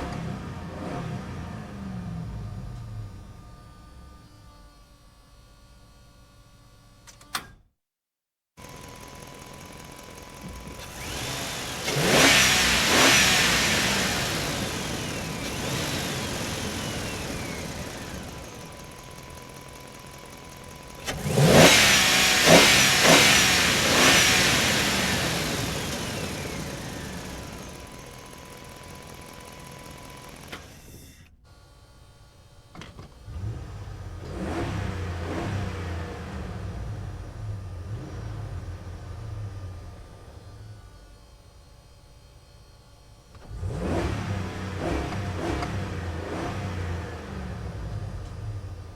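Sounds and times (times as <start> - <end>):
motorcycle engine revving: 0.0 - 3.4, 8.6 - 30.8, 33.2 - 41.1, 43.3 - 48.9.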